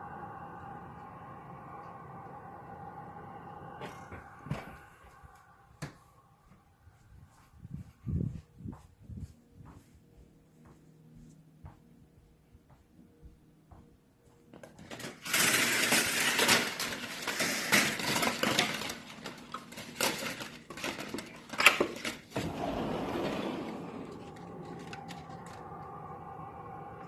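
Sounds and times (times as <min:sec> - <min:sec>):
eerie howling drone: 0:00.0 - 0:08.4, 0:15.0 - 0:27.0.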